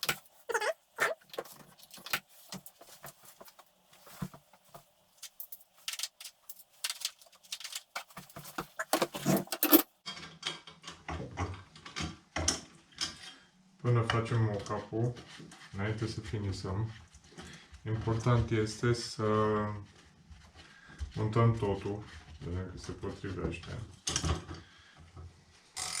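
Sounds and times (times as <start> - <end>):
small metal parts clinking: 5.2 - 9.9.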